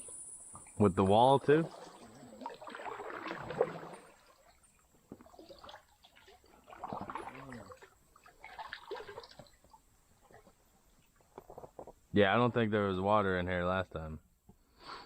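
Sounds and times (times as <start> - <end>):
shallow water sloshing: 0.6 - 11.9.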